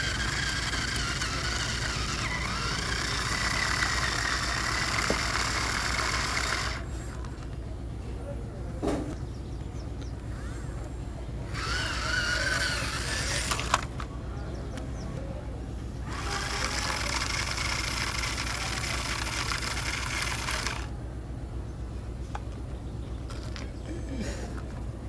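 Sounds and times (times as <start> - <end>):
small electric motor running: 0.0 - 7.3, 11.5 - 14.1, 16.0 - 20.9
steady low hum: 0.0 - 25.0.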